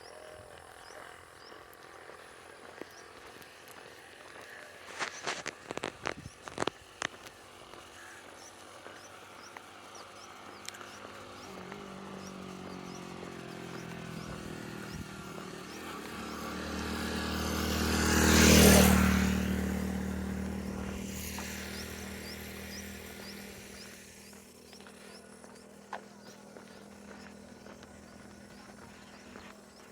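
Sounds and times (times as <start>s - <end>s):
vehicle engine hum passing: 0.0s - 29.9s.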